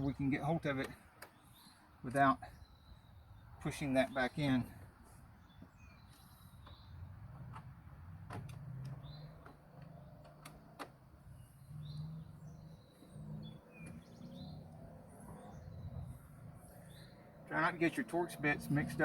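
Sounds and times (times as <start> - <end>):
faint bird chirps: 11.2 - 17.4.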